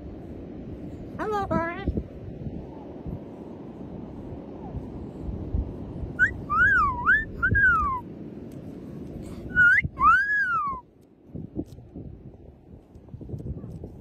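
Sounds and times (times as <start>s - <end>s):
parrot whistling: 6.2s - 8.0s, 9.5s - 10.8s.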